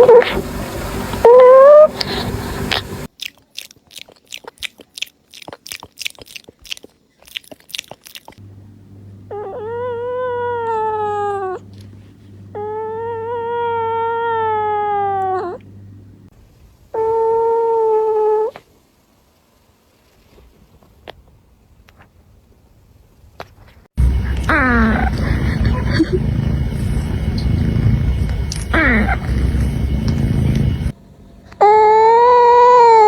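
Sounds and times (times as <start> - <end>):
cat snoring with a whistle: 9.3 - 15.6, 24.1 - 31.0.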